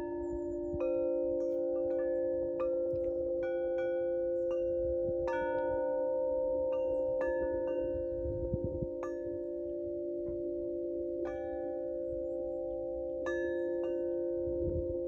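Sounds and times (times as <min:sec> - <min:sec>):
metal chimes ringing: 0:00.0 - 0:08.4.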